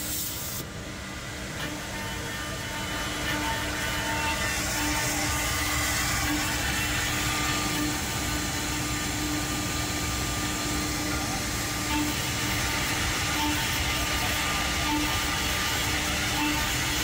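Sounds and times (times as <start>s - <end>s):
drilling and milling machine running: 0.0s - 17.0s.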